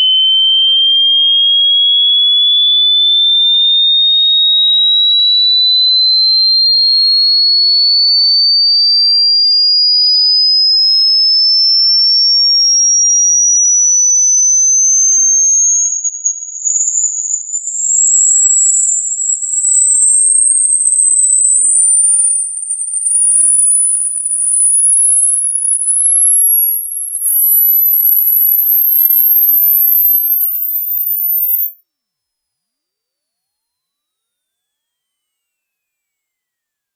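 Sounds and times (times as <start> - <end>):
rising sine tone sweep: 0.0 - 2.6, 10.2 - 31.8.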